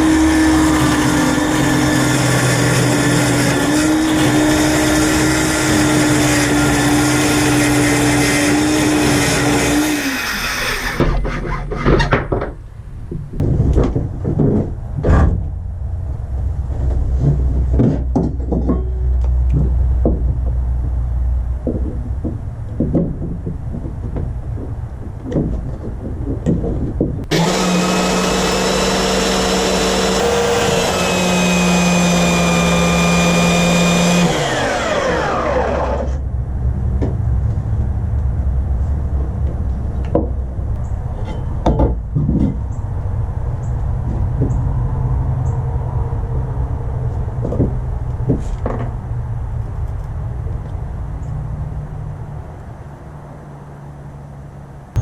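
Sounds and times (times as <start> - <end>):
low rumbling: 0.0 - 55.0
electric motor whirring: 27.3 - 36.2.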